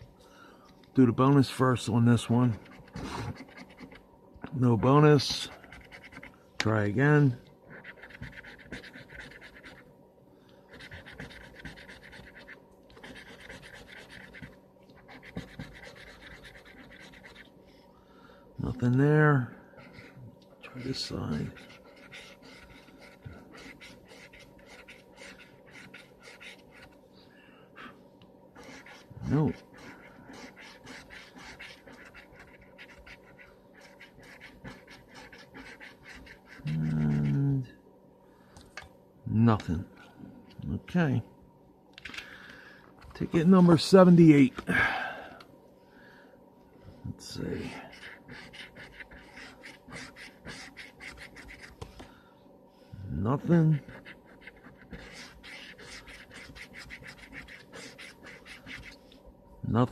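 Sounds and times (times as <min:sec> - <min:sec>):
lottery ticket scratching: 0:07.2 - 0:09.8, 0:10.7 - 0:17.4, 0:18.6 - 0:27.0, 0:28.6 - 0:37.6, 0:47.4 - 0:51.8, 0:53.4 - 0:59.0.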